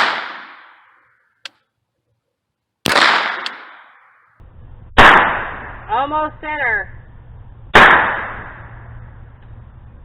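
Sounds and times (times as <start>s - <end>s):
gunshot ringing out: 0.0s - 0.9s, 2.8s - 4.0s, 5.0s - 5.9s, 7.7s - 8.8s.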